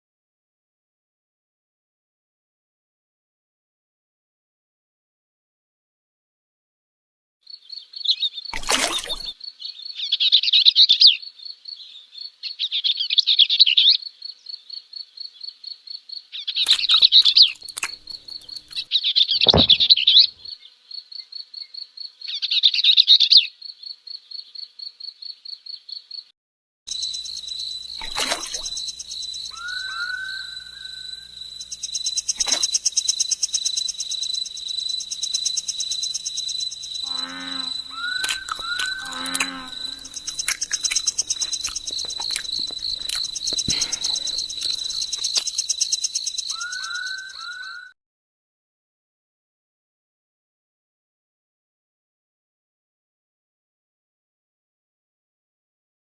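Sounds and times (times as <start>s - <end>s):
insects chirring: 7.5s - 10.3s, 13.8s - 22.6s, 26.9s - 47.8s
short rising whistles: 37.8s - 42.4s, 46.5s - 47.9s.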